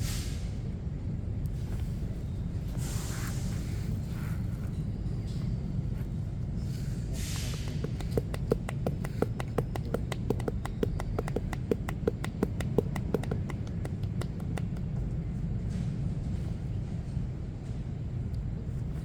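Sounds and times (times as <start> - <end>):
low street rumble: 0.0 - 19.0
hands slapping a body: 7.4 - 15.0.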